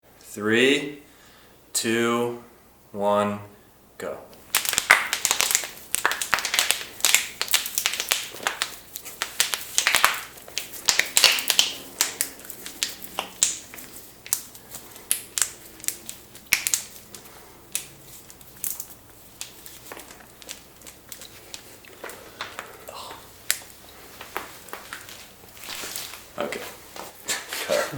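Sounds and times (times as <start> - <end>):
knuckles cracking: 4.5 - 26.2.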